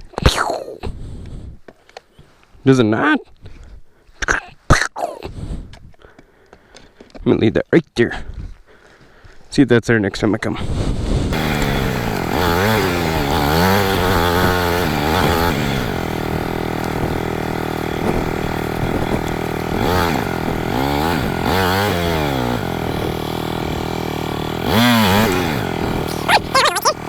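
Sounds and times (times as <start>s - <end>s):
dirt bike engine revving: 11.3s - 27.0s.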